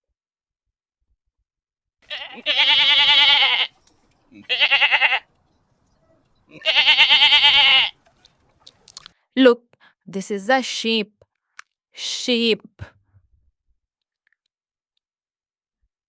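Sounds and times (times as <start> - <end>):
goat bleating: 2.0 - 5.3, 6.2 - 8.4.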